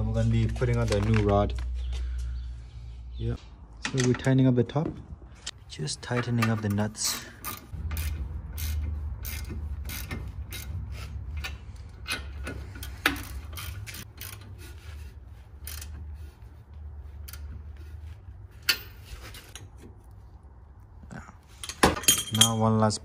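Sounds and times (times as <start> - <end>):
socket ratchet clicking: 7.4 - 14.4.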